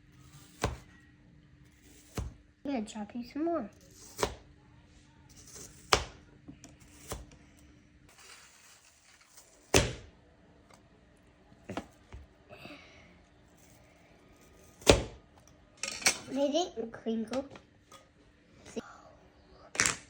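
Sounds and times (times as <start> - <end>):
crinkle cutter chopping tomato: 0.3 - 0.9, 1.8 - 2.4, 3.9 - 4.4, 5.4 - 7.3.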